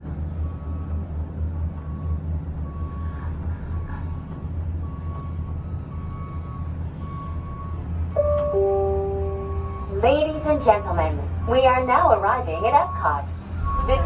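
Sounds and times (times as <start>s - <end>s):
faint high tone: 8.2s - 10.9s
gondola cabin rumbling on cable: 9.7s - 14.0s.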